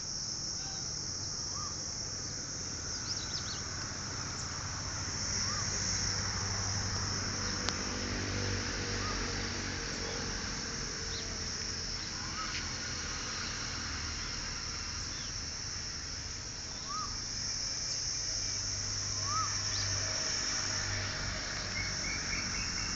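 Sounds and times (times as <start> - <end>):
insect chorus: 0.0 - 22.9
faint chirping calls: 0.6 - 4.6, 16.6 - 17.2, 19.1 - 20.0, 21.6 - 22.9.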